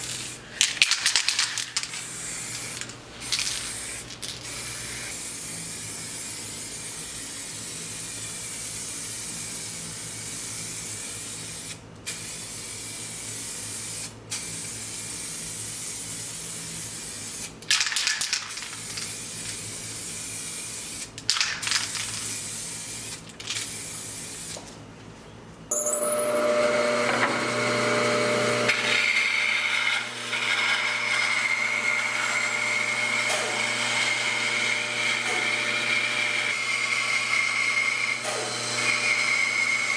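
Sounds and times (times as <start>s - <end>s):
power tool whining: 25.7s - 39.9s.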